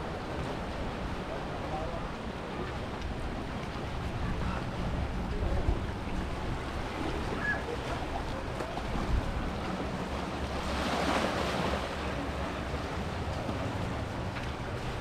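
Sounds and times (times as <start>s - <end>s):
sea waves washing in: 0.0s - 15.0s
wind on microphone: 2.9s - 9.9s.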